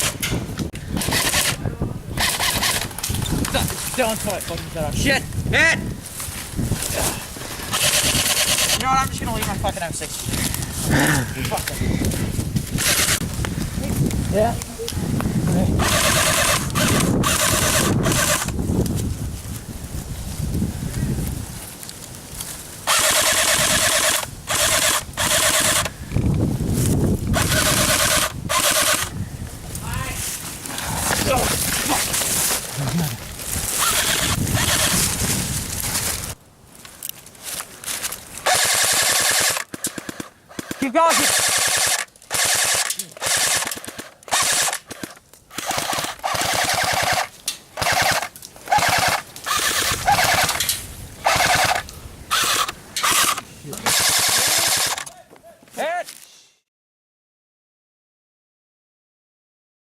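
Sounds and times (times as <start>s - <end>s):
airsoft gun firing bursts: 1.0s - 1.6s, 2.2s - 3.0s, 7.7s - 8.9s, 12.8s - 13.2s, 15.8s - 18.5s, 22.8s - 25.9s, 27.3s - 29.1s, 33.8s - 35.1s, 38.4s - 50.6s, 51.2s - 55.1s.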